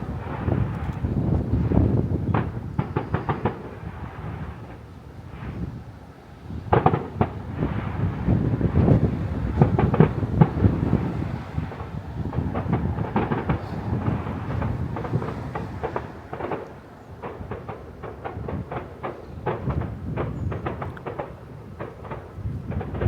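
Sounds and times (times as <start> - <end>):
fireworks bangs and crackles: 0.0 - 23.0.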